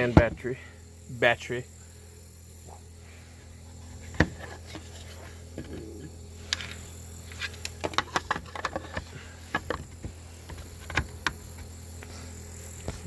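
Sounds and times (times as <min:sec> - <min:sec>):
steady low hum: 0:00.0 - 0:13.0
plastic parts clicking: 0:06.5 - 0:11.7.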